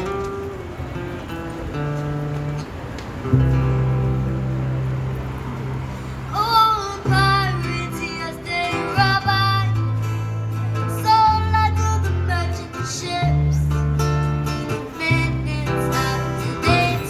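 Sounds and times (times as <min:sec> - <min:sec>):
strummed acoustic guitar: 0:00.0 - 0:17.0
person singing in a high voice: 0:06.4 - 0:09.8, 0:10.9 - 0:13.7, 0:14.7 - 0:17.0.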